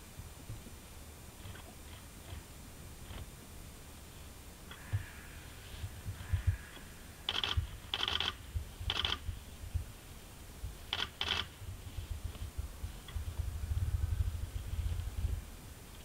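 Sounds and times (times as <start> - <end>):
camera mechanism buzzing: 7.3 - 9.2, 10.9 - 11.5.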